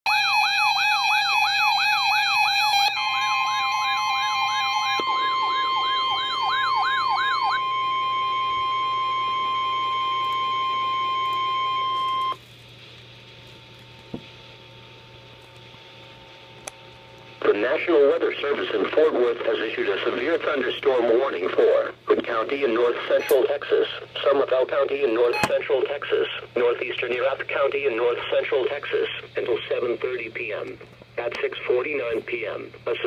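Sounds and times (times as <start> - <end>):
electronic siren wail: 0.1 - 12.4
steady warning alarm tone: 0.1 - 12.4, 23.1 - 23.6, 25.2 - 25.7
faint hiss and hum: 7.5 - 33.0.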